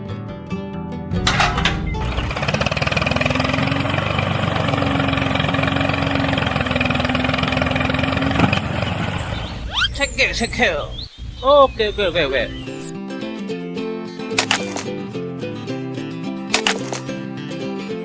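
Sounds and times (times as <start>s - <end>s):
tractor engine running: 1.2s - 13.0s.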